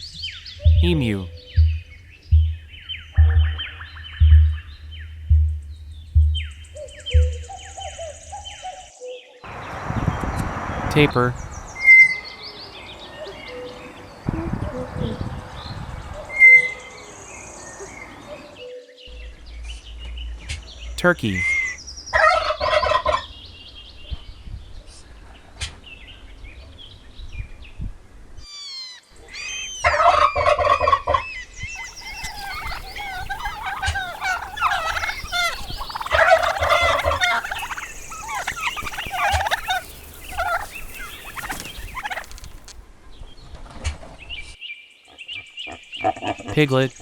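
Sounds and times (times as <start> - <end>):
turkeys gobbling: 31.8 - 42.8.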